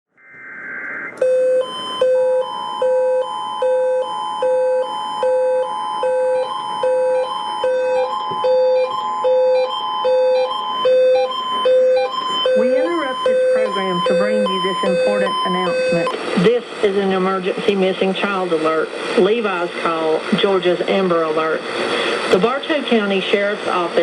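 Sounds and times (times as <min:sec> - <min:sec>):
two-tone attention signal: 0:00.2 - 0:16.2
alarm beeping: 0:00.2 - 0:16.6.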